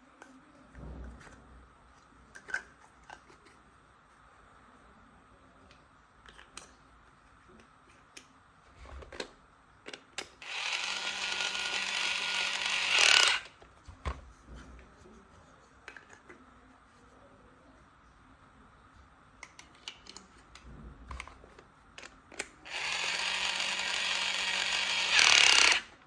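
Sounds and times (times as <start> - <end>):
small electric drill whirring: 10.4 - 13.6, 22.6 - 26.0.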